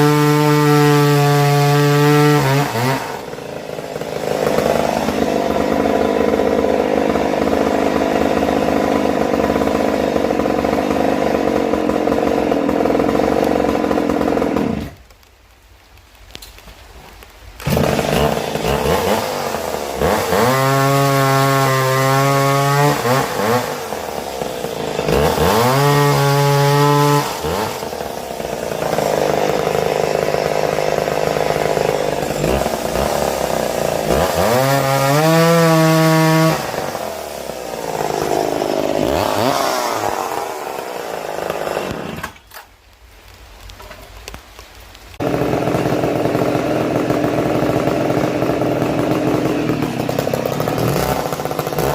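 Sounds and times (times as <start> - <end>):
chainsaw revving and cutting: 0.0 - 15.2, 17.6 - 42.5, 45.2 - 51.9.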